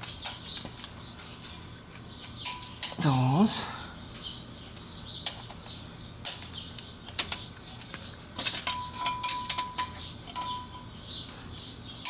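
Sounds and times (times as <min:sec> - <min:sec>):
hand tools clicking on metal: 0:08.4 - 0:10.8.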